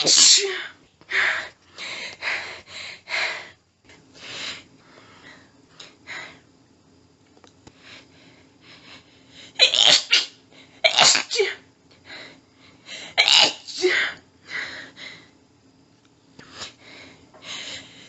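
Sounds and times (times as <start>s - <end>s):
woman sneezing: 0.0s - 0.8s, 9.6s - 11.6s, 13.1s - 14.2s.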